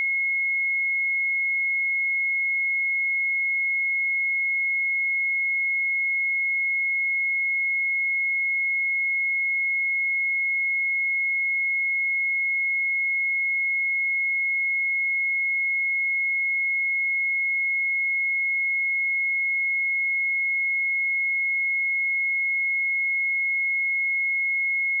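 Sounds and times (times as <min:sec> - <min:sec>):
high-pitched sine test tone: 0:14.8 - 0:25.0.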